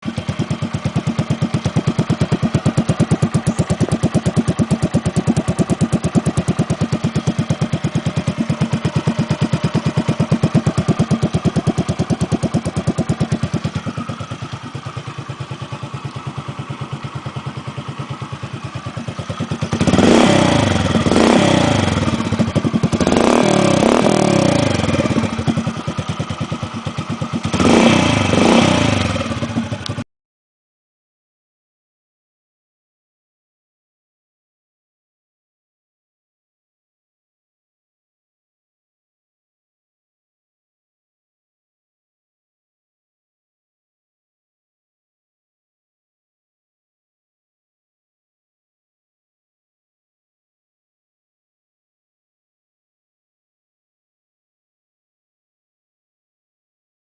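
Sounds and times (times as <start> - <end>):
motorcycle engine idling and revving: 0.0 - 30.1.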